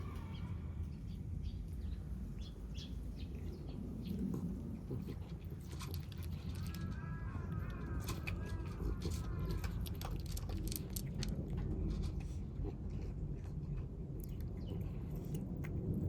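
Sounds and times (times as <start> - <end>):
kittens crunching food: 3.3 - 16.0.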